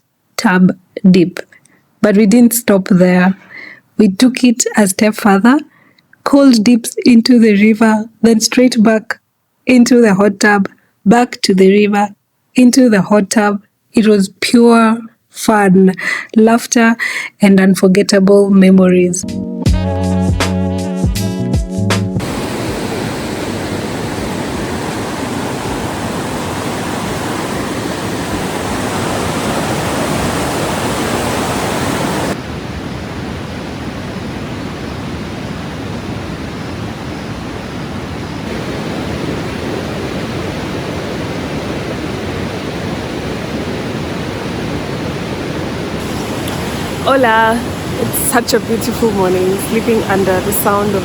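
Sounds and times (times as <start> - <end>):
river rushing over rocks: 22.2 - 51.0.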